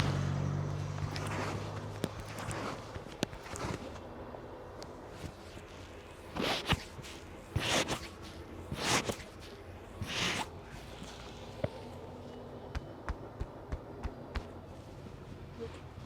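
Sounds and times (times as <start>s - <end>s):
hands rubbing over head: 1.0s - 4.0s, 6.3s - 10.6s.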